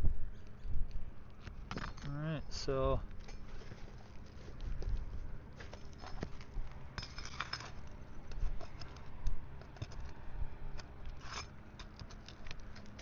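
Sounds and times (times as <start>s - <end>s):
metal scraping: 3.2s - 13.0s.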